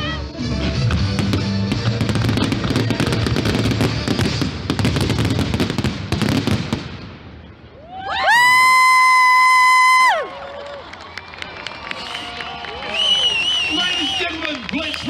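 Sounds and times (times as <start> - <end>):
fireworks crackling and banging: 0.5 - 7.5, 11.4 - 15.0.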